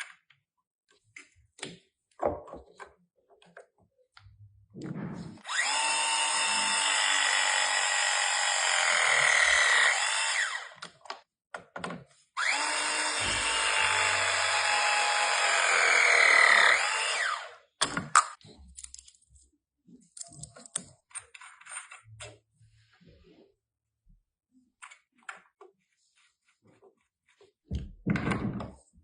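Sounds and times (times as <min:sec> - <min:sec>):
power tool running: 0:05.4 - 0:10.8, 0:12.4 - 0:17.6.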